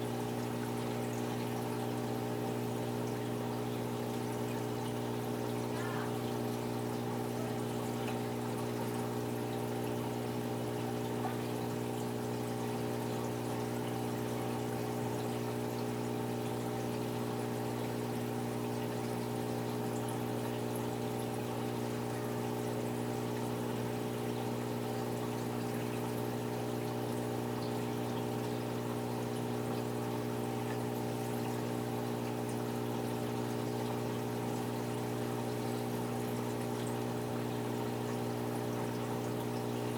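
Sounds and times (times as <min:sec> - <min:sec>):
electric pump hum: 0:00.0 - 0:39.9
water pouring and trickling: 0:00.0 - 0:39.9.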